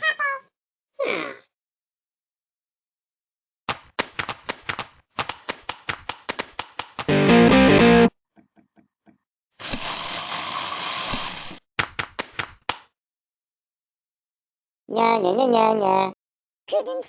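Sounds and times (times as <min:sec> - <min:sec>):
fast sharp clicks: 0:03.7 - 0:07.1.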